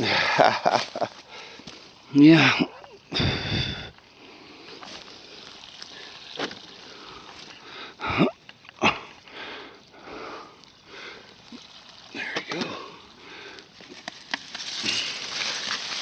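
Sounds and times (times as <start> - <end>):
knocks and rustles of soil: 0.0 - 4.0, 4.6 - 9.2, 10.6 - 16.0
man breathing heavily: 1.2 - 11.5, 12.1 - 13.9.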